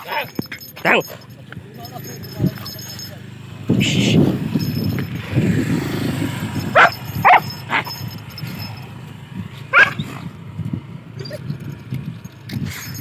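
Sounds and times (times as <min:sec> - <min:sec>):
dogs barking: 0:00.0 - 0:03.1, 0:04.0 - 0:08.8, 0:09.6 - 0:10.3.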